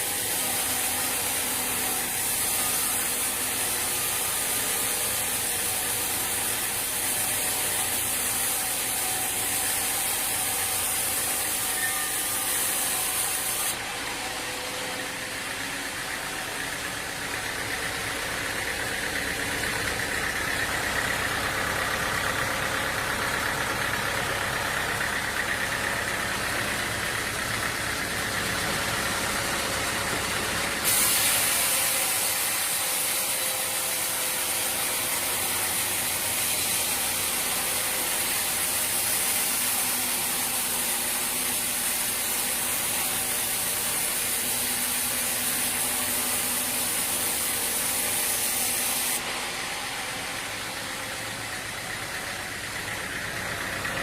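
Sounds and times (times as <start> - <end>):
machine engine running: 7.5 - 32.2, 44.4 - 54.0.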